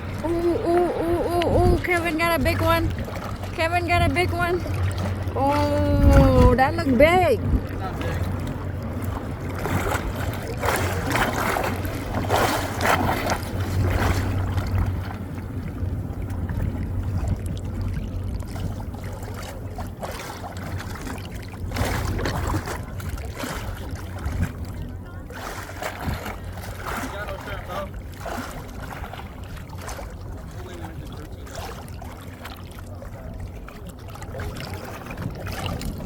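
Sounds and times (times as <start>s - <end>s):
low rumble: 0.0s - 10.5s
wind buffeting microphone: 0.0s - 32.2s, 32.9s - 36.0s
water lapping against boat: 0.0s - 36.0s.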